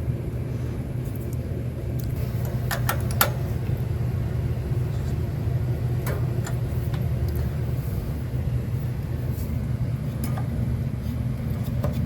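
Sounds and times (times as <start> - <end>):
steady low rumble: 0.0 - 12.0.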